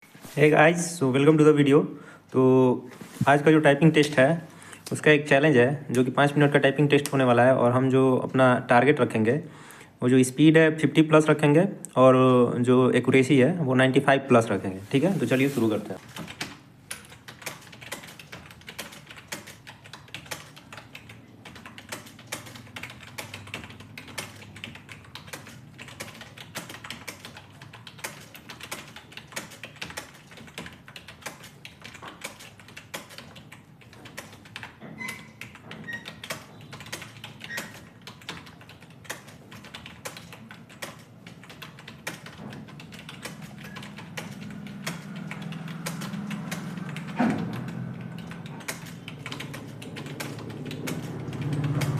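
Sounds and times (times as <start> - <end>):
fast typing on keyboard: 16.0 - 51.9.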